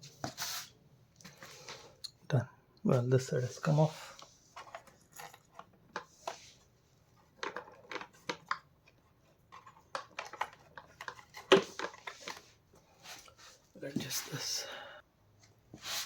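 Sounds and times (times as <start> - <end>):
plastic parts clicking and knocking: 7.2 - 12.5.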